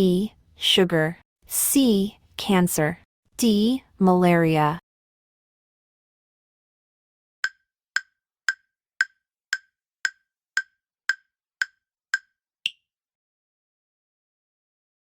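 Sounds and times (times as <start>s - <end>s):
countdown timer ticks: 7.4s - 12.8s.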